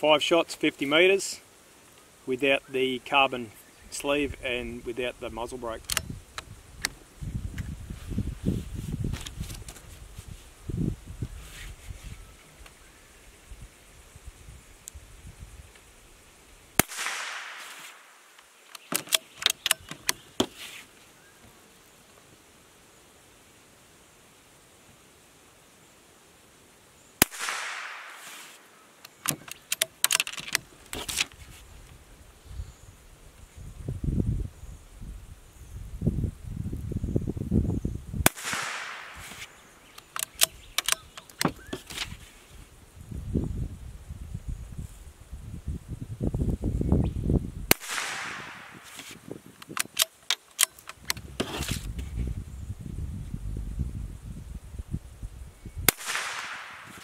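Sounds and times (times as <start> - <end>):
wind rumble on microphone: 3.8 - 16.3, 31.0 - 38.3, 40.5 - 50.0, 51.0 - 55.9
metallic clicks of rifle bolt: 5.8 - 7.0, 18.7 - 20.2, 29.0 - 31.4, 39.2 - 42.1, 47.8 - 51.9
rifle shot: 16.8 - 18.2, 27.2 - 28.6, 38.2 - 39.4, 47.7 - 49.0, 55.9 - 57.0.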